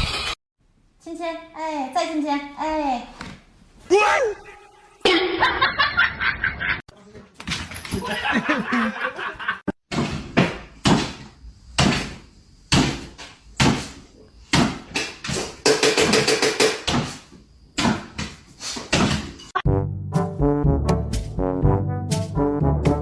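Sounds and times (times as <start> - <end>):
sharp knocks against something hard: 9.9 - 17.2.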